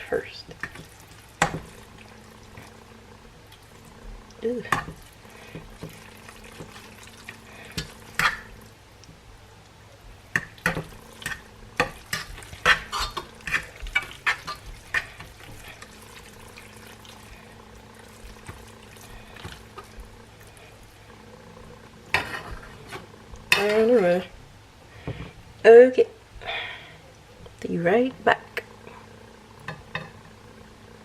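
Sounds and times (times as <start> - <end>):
steady low hum: 0.0 - 31.0
utensil scraping a pot: 4.4 - 8.6, 10.4 - 21.0, 22.1 - 24.3.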